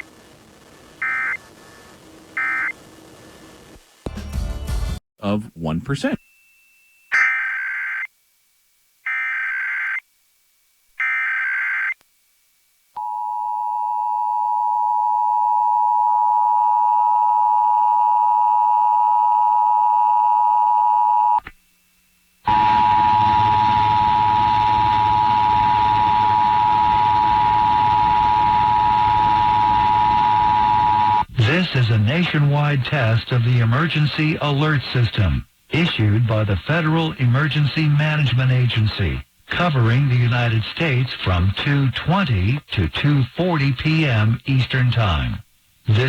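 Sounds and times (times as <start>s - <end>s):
radio static hiss: 0.0s - 4.1s, 22.3s - 46.0s
low hum: 22.2s - 32.3s.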